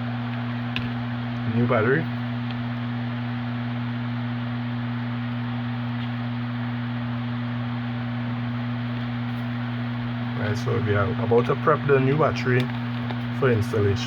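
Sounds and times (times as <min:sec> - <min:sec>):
electrical mains hum: 0:00.0 - 0:14.0.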